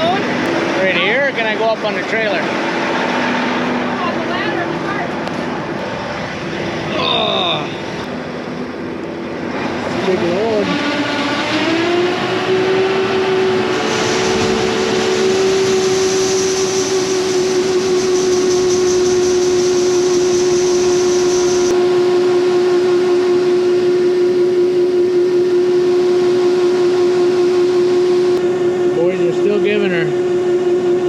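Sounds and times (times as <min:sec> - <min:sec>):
tractor engine running at high revs: 0:00.0 - 0:07.0, 0:07.7 - 0:31.0
high hiss: 0:13.8 - 0:21.7.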